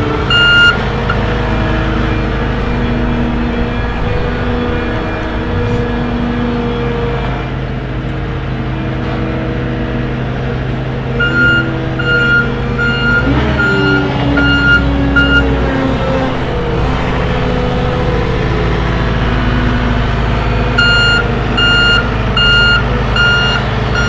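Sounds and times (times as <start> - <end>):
loader engine running: 0.0 - 24.0
backup alarm beeping: 0.3 - 1.2, 11.2 - 15.6, 20.8 - 24.0.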